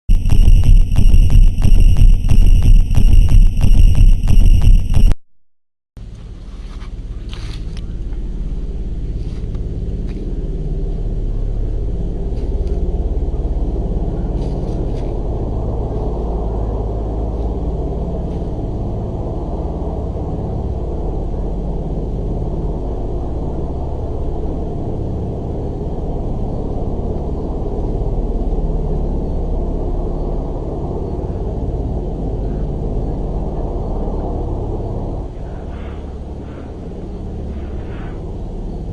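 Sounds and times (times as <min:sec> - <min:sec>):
low rumbling drone: 0:00.1 - 0:05.2, 0:06.0 - 0:38.9.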